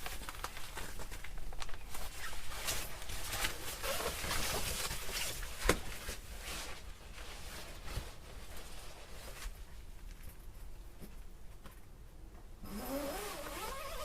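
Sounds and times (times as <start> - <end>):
tent gear rustling: 1.9 - 9.7, 12.8 - 14.0.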